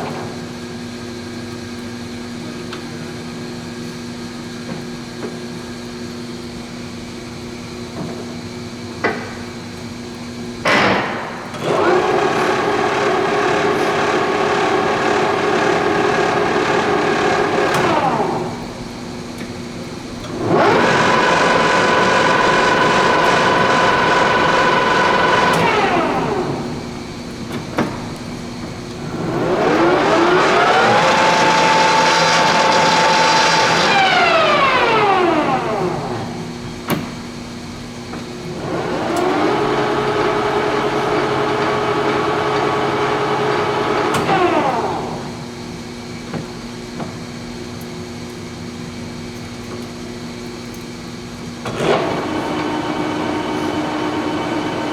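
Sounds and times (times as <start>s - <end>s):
lathe spindle gear whine: 11.1s - 48.2s, 51.4s - 54.9s.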